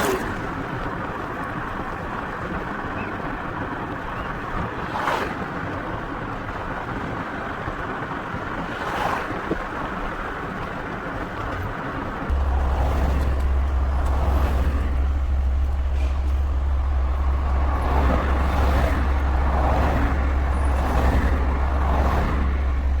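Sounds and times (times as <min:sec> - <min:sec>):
cars passing: 0:00.0 - 0:02.7, 0:12.1 - 0:23.0
deep traffic rumble: 0:00.0 - 0:23.0.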